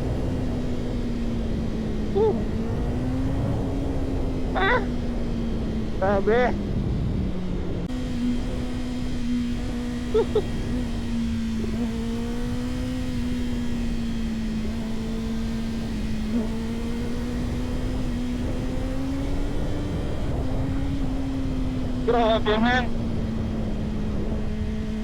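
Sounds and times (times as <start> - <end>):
motorcycle engine running: 0.0 - 25.0.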